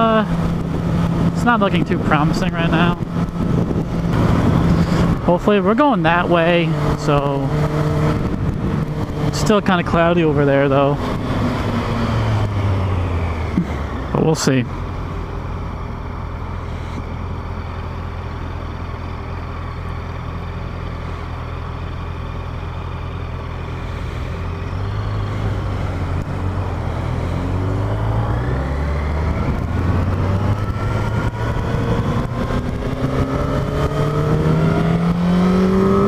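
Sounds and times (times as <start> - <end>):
motorcycle engine idling and accelerating: 0.0 - 36.0.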